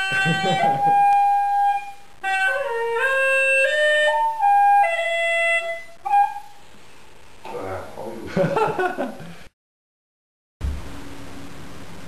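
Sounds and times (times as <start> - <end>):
gourd pipe playing a melody: 0.0 - 6.6.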